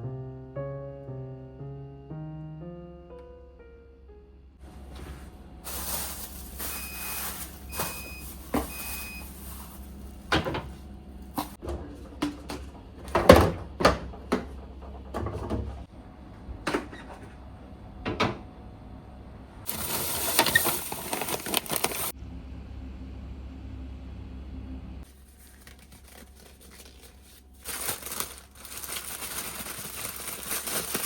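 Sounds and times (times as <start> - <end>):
rustling: 5.0 - 10.3, 19.7 - 22.1, 25.1 - 31.0
short electronic beeps: 6.7 - 9.3.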